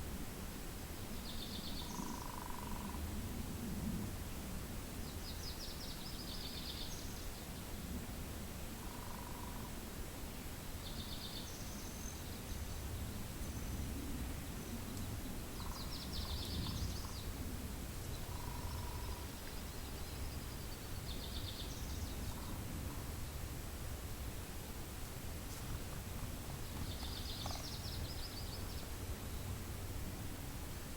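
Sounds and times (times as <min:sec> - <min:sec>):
low wind rumble: 0:00.0 - 0:30.9
distant birds calling: 0:15.5 - 0:17.4, 0:18.1 - 0:23.1, 0:26.4 - 0:29.6.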